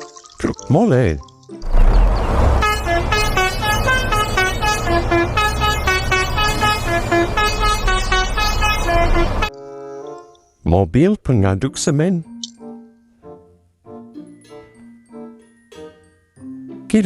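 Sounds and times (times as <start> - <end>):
heavy vehicle engine rumbling: 1.6 - 9.5
musical multi-note horn: 2.5 - 9.5.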